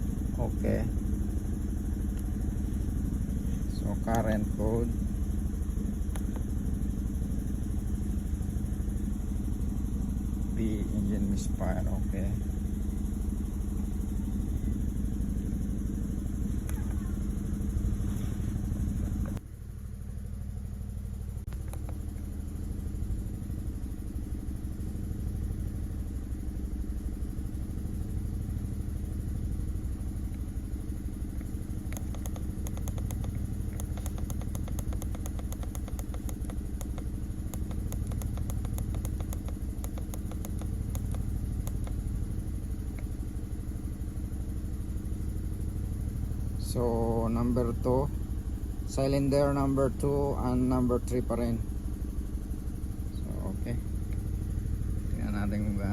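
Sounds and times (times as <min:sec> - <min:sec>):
car engine idling roughly: 0:00.0 - 0:55.9
fast light ticking: 0:21.5 - 0:22.3, 0:31.4 - 0:43.1.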